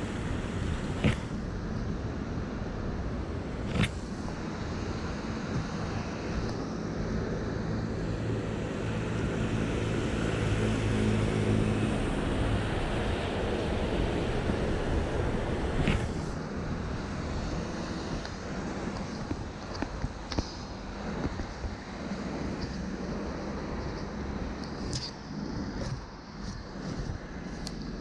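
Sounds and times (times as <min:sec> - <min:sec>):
vehicle engine hum: 0:00.0 - 0:28.0
tyres hissing on wet road: 0:03.5 - 0:19.2.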